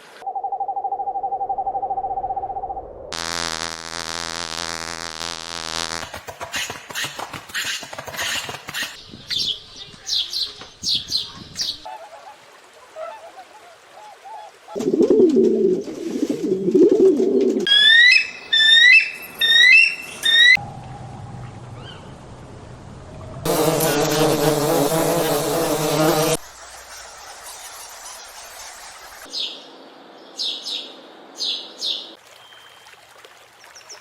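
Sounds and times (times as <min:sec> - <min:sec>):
wings fluttering: 0:05.8 - 0:11.8
low warbling coo: 0:14.7 - 0:17.6
low buzzing tone: 0:20.6 - 0:23.4.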